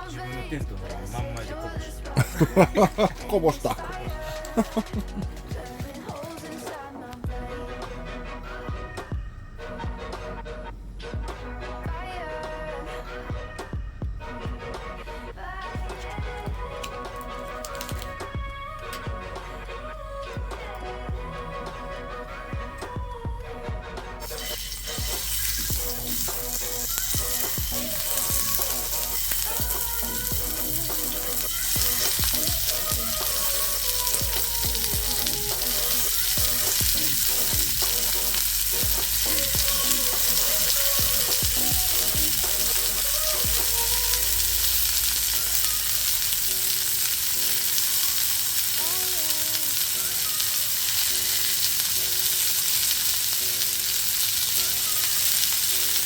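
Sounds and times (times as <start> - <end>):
food sizzling: 1.2 - 7.0, 17.4 - 18.2, 24.2 - 56.0.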